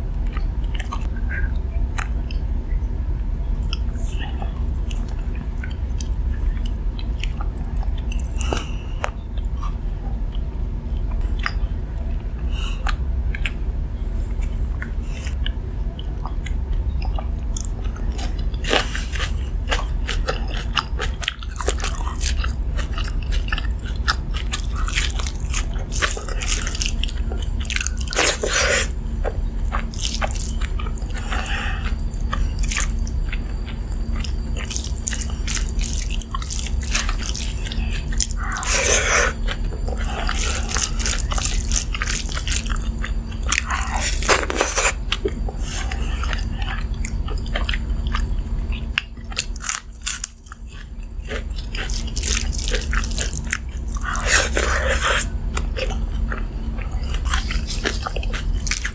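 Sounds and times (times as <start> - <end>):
low steady hum: 0.0 - 58.9
person chewing crunchy food: 14.4 - 58.9.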